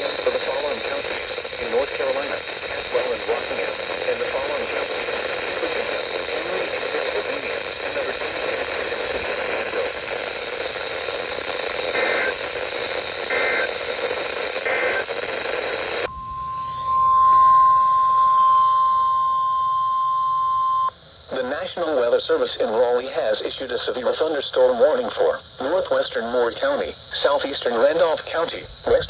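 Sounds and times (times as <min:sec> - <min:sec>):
warbling data bursts: 0:00.0 - 0:15.2
radio hiss: 0:00.0 - 0:29.0
steady warning alarm tone: 0:16.0 - 0:21.0.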